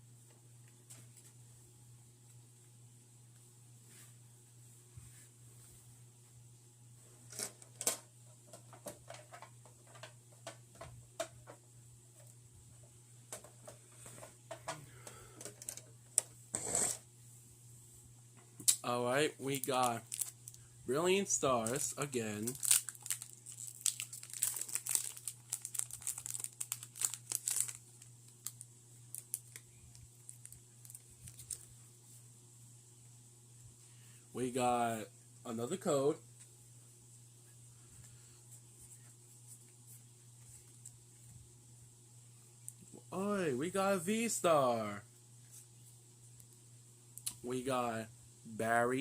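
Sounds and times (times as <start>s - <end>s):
faint low hum: 0.0s - 49.0s
cards and wrappers crinkling: 19.5s - 31.7s.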